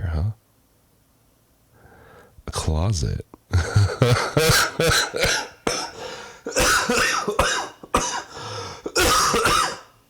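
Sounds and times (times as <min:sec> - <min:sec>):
man coughing: 0:03.5 - 0:09.9.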